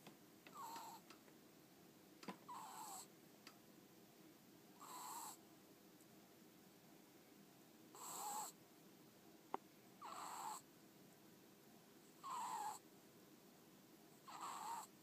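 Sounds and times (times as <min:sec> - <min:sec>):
ferret snoring: 0:00.5 - 0:01.0, 0:02.5 - 0:03.1, 0:04.8 - 0:05.4, 0:07.9 - 0:08.6, 0:10.0 - 0:10.7, 0:12.2 - 0:12.8, 0:14.2 - 0:15.0.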